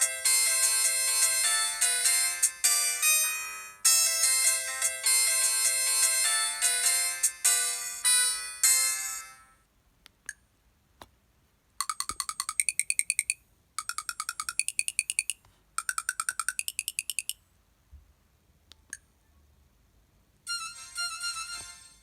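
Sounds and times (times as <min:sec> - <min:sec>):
electronic ringtone beeps: 0:11.8 - 0:17.4, 0:20.5 - 0:22.0.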